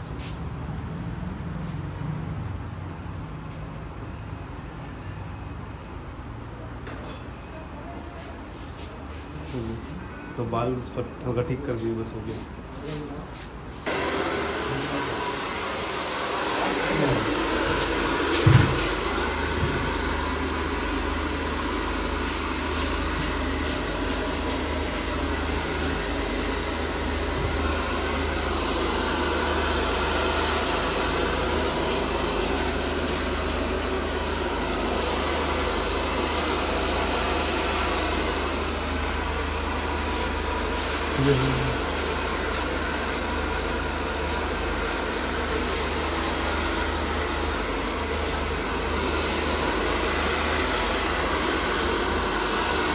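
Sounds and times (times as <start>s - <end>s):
low thump: 18.4s - 19.0s.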